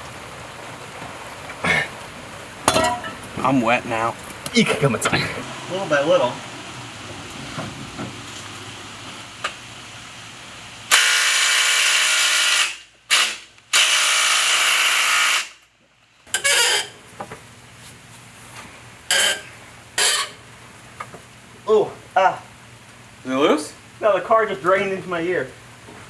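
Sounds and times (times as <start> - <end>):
impact wrench bursts: 10.9 - 15.6.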